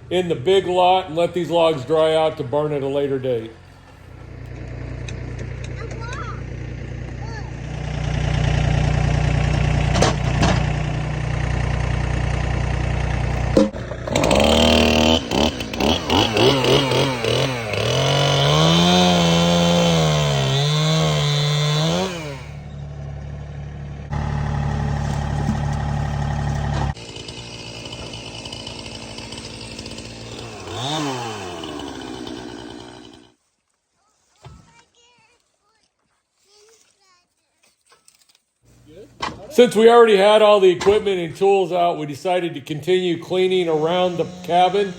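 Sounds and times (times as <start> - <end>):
chainsaw running and cutting: 4.3 - 22.8, 23.6 - 33.4, 41.4 - 44.9.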